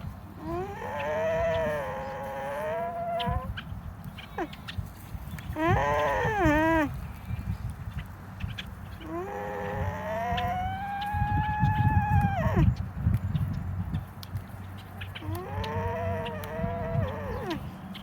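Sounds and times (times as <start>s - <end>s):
alpaca calling: 0.3s - 4.7s, 5.4s - 7.0s, 8.9s - 12.8s, 15.1s - 18.0s.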